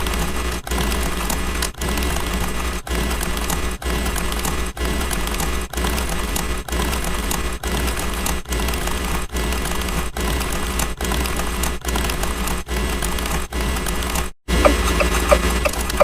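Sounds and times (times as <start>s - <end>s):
deep hum: 14.5s - 16.0s
harsh distorted noise: 14.5s - 16.0s.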